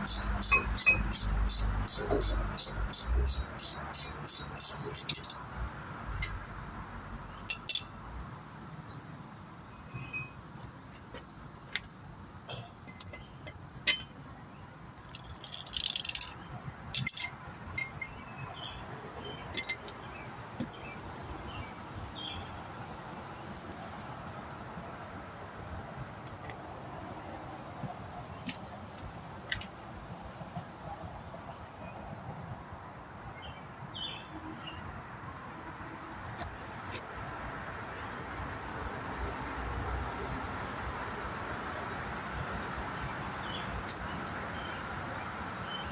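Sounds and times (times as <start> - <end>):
metal tools clinking: 0.0 - 5.4, 7.5 - 8.0, 15.1 - 18.1
metal parts jangling rattles: 0.0 - 5.5, 7.5 - 8.0, 15.1 - 18.1.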